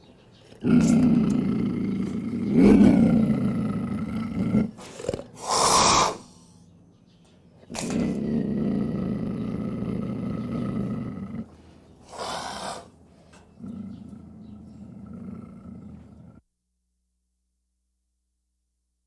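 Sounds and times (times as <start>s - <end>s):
lion growling: 0.5s - 6.3s, 7.7s - 12.9s, 13.5s - 16.4s
lion breath: 4.7s - 6.7s, 11.4s - 13.8s.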